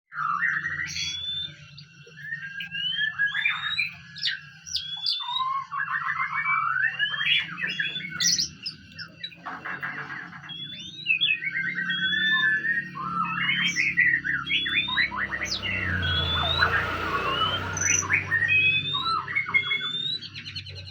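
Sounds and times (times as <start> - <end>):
songbird singing: 0.1 - 20.9.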